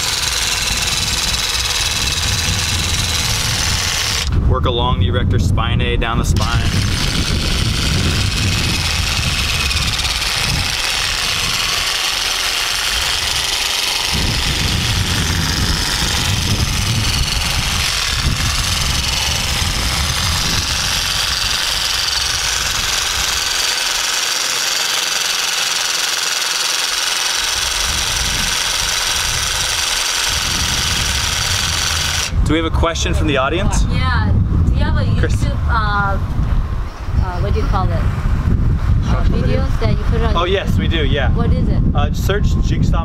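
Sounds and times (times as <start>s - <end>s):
massage gun motor buzzing: 0.0s - 4.4s, 6.4s - 32.4s.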